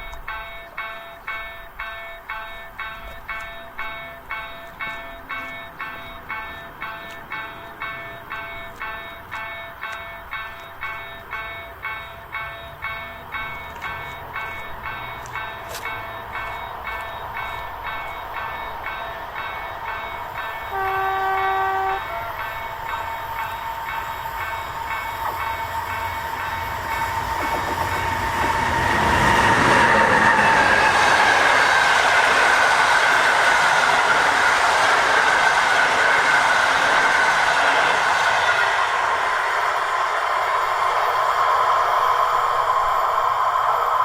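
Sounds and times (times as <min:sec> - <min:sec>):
level-crossing warning bell: 0:00.0 - 0:44.0
train wheels on rail: 0:00.0 - 0:44.0
locomotive horn blast: 0:20.7 - 0:22.6.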